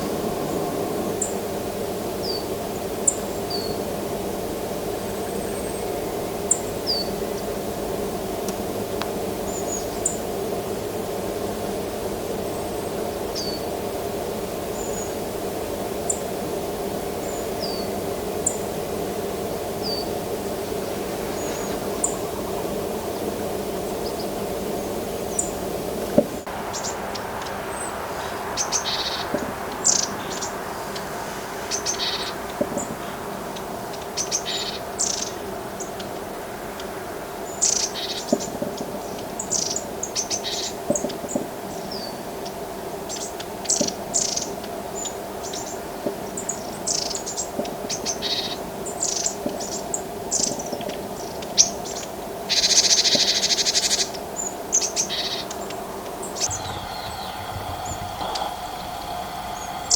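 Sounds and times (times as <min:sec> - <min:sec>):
low background hum: 0:51.3 - 0:59.9.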